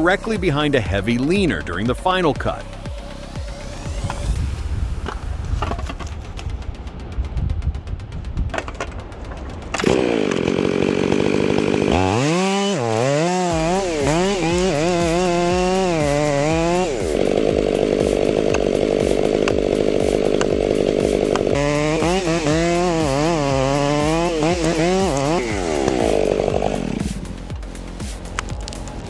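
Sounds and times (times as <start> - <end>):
chainsaw cutting wood: 2.6 - 6.3, 9.6 - 29.0.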